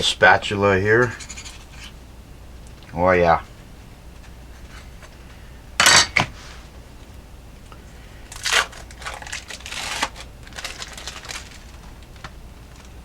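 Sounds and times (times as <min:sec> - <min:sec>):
crinkling and rustling: 0:08.3 - 0:13.0.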